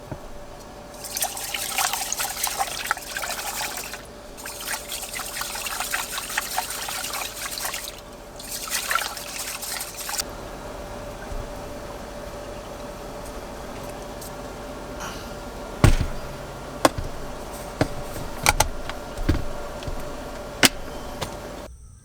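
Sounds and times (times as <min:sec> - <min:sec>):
water pouring and splashing: 0:00.1 - 0:10.2.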